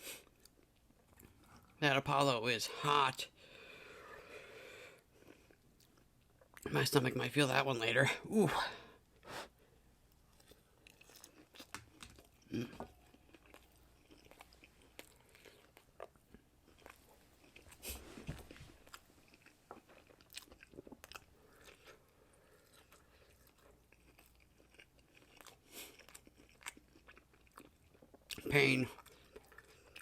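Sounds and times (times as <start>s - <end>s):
person chewing: 0.1s - 1.8s, 4.9s - 6.6s, 10.1s - 30.0s.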